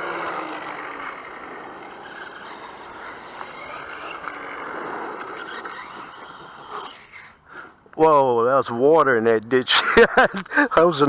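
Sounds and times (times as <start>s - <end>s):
rc truck motor whirring: 0.0s - 7.5s.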